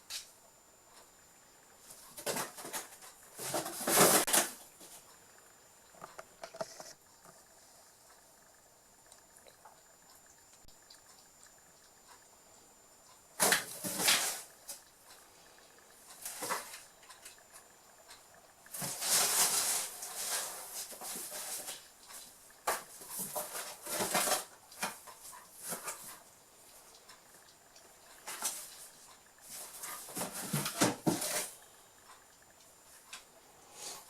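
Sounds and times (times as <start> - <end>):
kittens scrabbling in cardboard box: 2.0 - 5.0, 13.4 - 14.5, 18.7 - 21.8, 22.7 - 26.1, 29.5 - 31.5.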